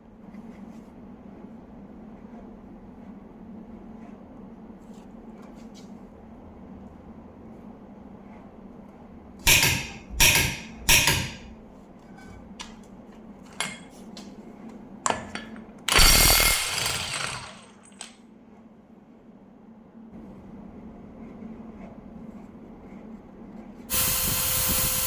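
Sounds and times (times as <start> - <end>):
impact wrench hammering: 9.4 - 11.5, 15.9 - 18.1.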